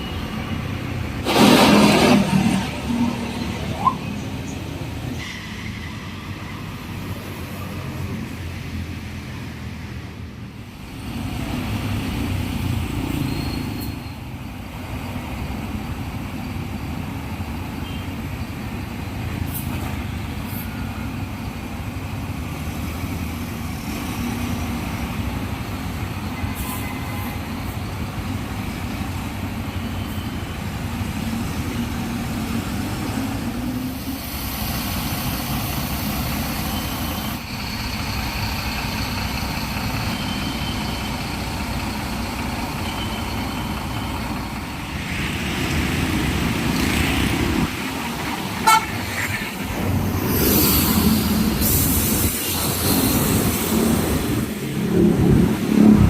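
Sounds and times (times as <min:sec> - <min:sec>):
bus diesel engines running: 0:00.0 - 0:56.0
air brake hisses: 0:50.3 - 0:53.7.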